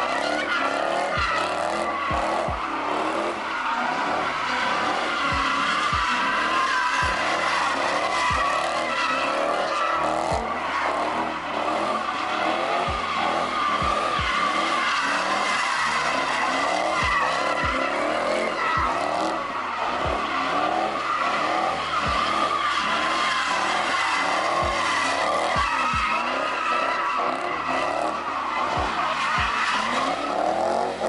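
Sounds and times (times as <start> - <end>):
car engine running: 0.0 - 31.0
tires squealing: 0.0 - 31.0.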